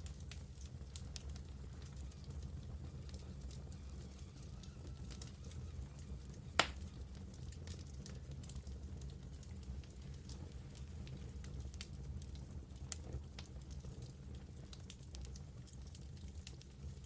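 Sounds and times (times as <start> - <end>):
wood fire rumbling and crackling: 0.0 - 17.0
loud sharp fire pop: 6.6 - 6.8.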